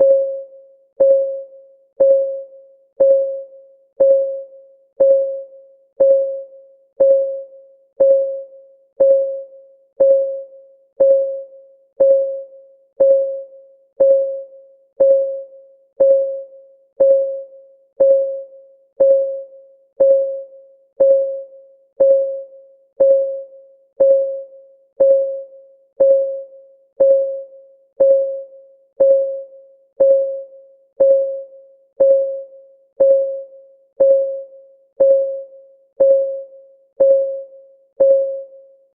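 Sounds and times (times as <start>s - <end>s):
timer ticking: 3.0s - 3.4s, 4.0s - 4.4s, 5.0s - 5.4s, 6.0s - 6.4s, 7.0s - 7.4s, 8.0s - 8.4s, 9.0s - 9.4s, 10.0s - 10.4s, 11.0s - 11.4s, 12.0s - 12.4s, 13.0s - 13.4s, 14.0s - 14.4s, 15.0s - 15.4s, 16.0s - 16.4s, 17.0s - 17.4s, 18.0s - 18.4s, 19.0s - 19.4s, 20.0s - 20.4s, 21.0s - 21.4s, 22.0s - 22.4s, 23.0s - 23.4s, 24.0s - 24.4s, 25.0s - 25.4s, 26.0s - 26.4s, 27.0s - 27.4s, 28.0s - 28.4s, 29.0s - 29.4s, 30.0s - 30.4s, 31.0s - 31.4s, 32.0s - 32.4s, 33.0s - 33.4s, 34.0s - 34.4s, 35.0s - 35.4s, 36.0s - 36.4s, 37.0s - 37.4s, 38.0s - 38.4s.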